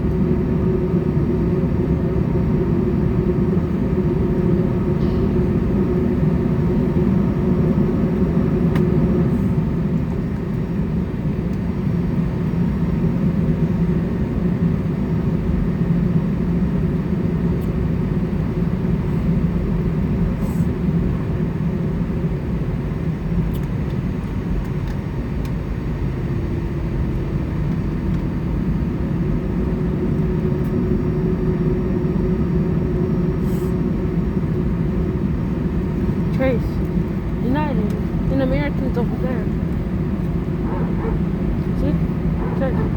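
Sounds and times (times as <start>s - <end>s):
jet engine cabin rumble: 0.0s - 42.9s
faint steady hum: 31.3s - 42.9s.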